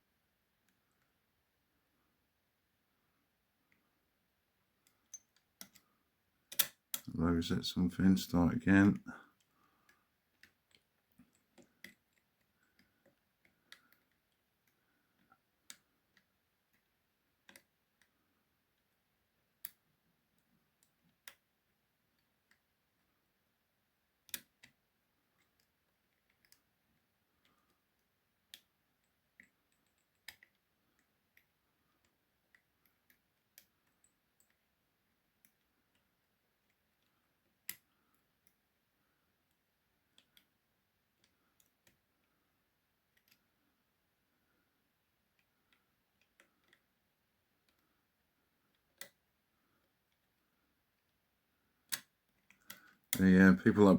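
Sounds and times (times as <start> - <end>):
metallic clicks of lock picking: 4.8 - 5.8, 6.5 - 7.1.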